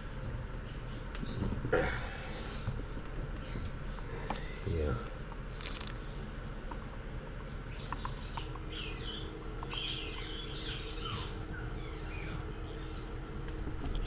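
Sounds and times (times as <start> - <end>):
steady low hum: 0.0 - 14.0
small birds chirping: 3.3 - 14.0.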